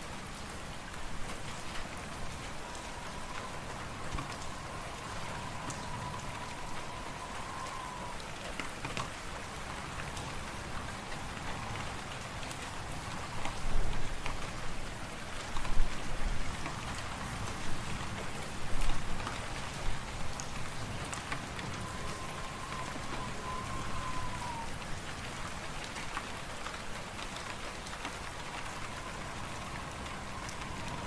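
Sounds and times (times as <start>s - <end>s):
wind whistling: 1.0s - 25.9s, 27.7s - 31.0s
wind blowing: 1.3s - 8.2s, 19.5s - 25.4s, 28.1s - 31.0s.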